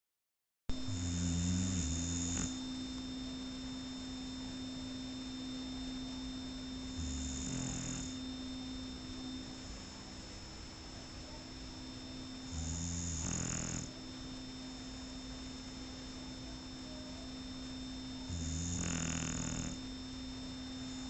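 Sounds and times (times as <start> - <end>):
electrical hum: 0.7 - 21.0
dog snoring: 0.8 - 2.6, 6.9 - 8.2, 12.4 - 14.0, 18.3 - 19.9.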